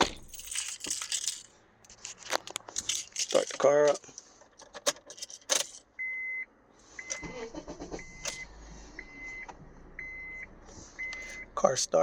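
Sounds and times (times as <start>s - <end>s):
car engine cranking and starting: 7.0s - 9.2s.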